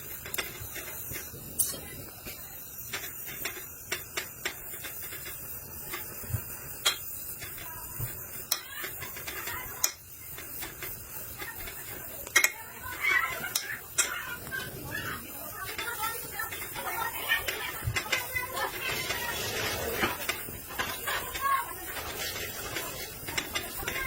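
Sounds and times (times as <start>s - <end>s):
steady hiss: 0.0s - 24.0s
light metallic clinks: 0.2s - 14.2s.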